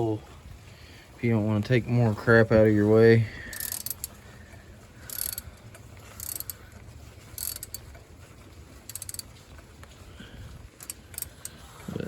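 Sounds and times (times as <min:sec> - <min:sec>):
socket ratchet clicking: 0:03.5 - 0:04.1, 0:05.1 - 0:05.4, 0:06.2 - 0:06.6, 0:07.4 - 0:07.8, 0:08.9 - 0:09.2.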